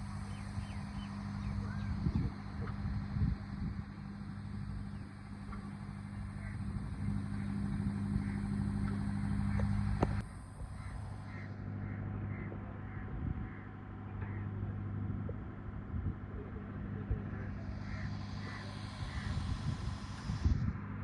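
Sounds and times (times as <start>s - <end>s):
truck engine running: 0.0s - 21.0s.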